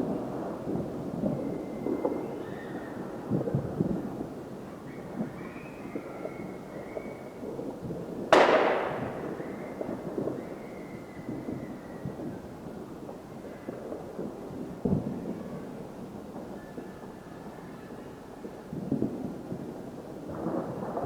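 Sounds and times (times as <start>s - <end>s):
distant firework pops and crackles: 0.0s - 21.0s
loud firework bang: 8.3s - 12.4s.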